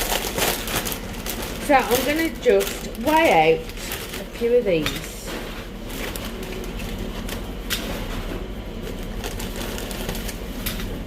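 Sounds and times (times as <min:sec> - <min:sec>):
chips clicking and rustling: 0:00.0 - 0:05.1, 0:08.7 - 0:11.0
steady background hum: 0:00.0 - 0:11.0.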